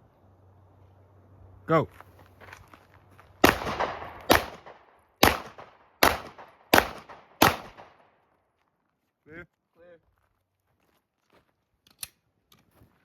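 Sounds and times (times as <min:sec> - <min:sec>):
pistol shots echoing: 0:03.4 - 0:08.2.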